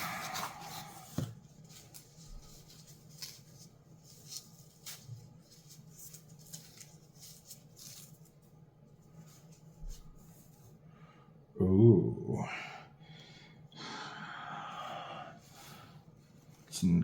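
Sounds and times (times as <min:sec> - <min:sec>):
rustling of packing: 0:00.0 - 0:10.7.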